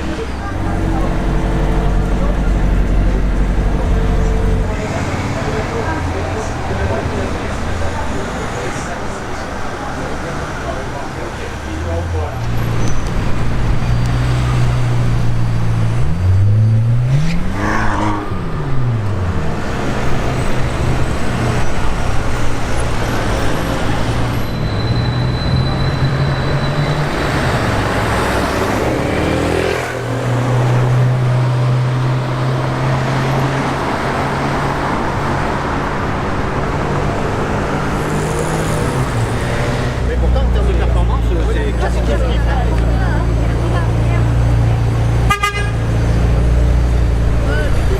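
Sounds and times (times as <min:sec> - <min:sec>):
engine accelerating: 0:00.0 - 0:08.2
engine revving: 0:00.0 - 0:08.2, 0:11.7 - 0:24.4, 0:25.2 - 0:47.9
car engines in traffic: 0:00.0 - 0:47.9.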